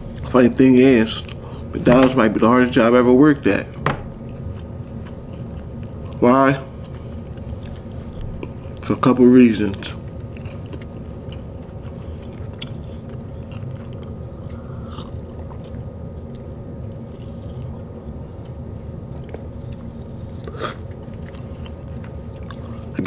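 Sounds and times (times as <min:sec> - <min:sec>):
steady low hum: 0:00.0 - 0:23.0
person chewing: 0:04.1 - 0:08.8, 0:10.1 - 0:23.0.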